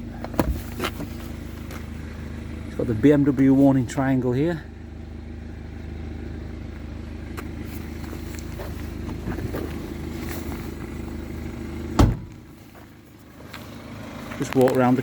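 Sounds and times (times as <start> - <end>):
diesel engine idling: 0.0 - 15.0
loud thump: 12.0 - 12.4.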